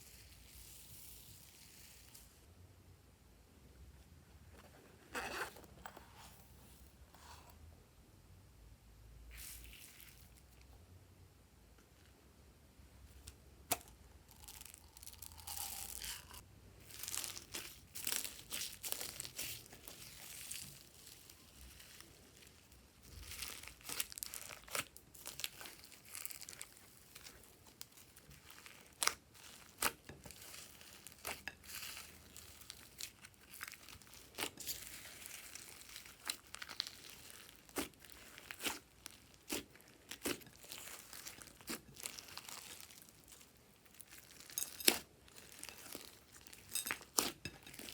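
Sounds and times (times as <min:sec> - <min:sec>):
hands kneading slime: 0:13.1 - 0:47.9.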